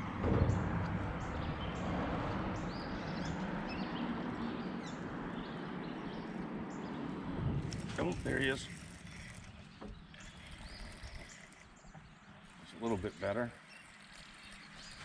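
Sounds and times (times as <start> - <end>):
steady low rumble: 0.0 - 10.2
small birds chirping: 2.5 - 15.0.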